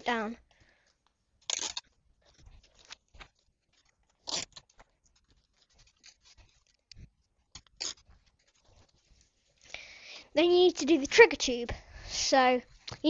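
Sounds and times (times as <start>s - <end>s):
adhesive tape ripping: 1.4s - 2.0s, 2.8s - 6.8s, 7.5s - 8.5s
paper tubes rustling: 1.5s - 9.7s.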